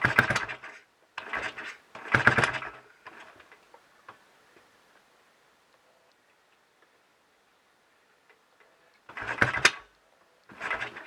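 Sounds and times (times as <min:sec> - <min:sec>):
motorcycle engine kick start clatter: 0:00.0 - 0:03.6, 0:09.1 - 0:09.9, 0:10.5 - 0:11.0
faint mechanical ticks: 0:05.7 - 0:07.0.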